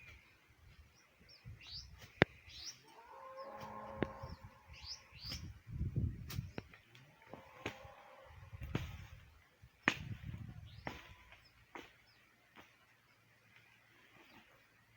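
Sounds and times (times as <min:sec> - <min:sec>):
small birds chirping: 0:00.0 - 0:14.9
hoe striking dry soil: 0:03.5 - 0:04.3, 0:05.2 - 0:05.6, 0:06.2 - 0:08.0, 0:08.6 - 0:09.2, 0:09.8 - 0:12.8.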